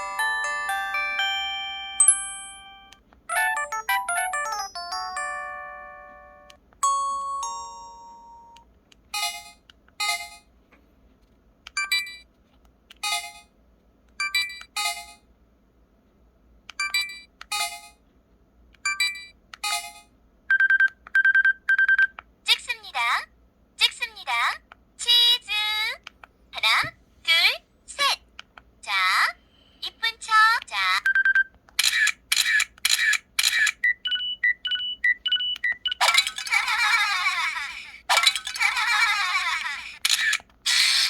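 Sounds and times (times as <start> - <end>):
melodic chime run: 0.0 - 8.6
paired bright chimes: 0.0 - 8.6.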